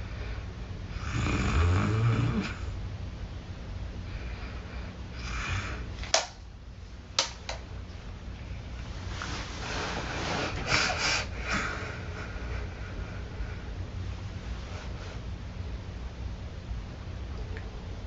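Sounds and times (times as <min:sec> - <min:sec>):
person breathing noisily: 0:04.0 - 0:06.0, 0:09.6 - 0:13.8.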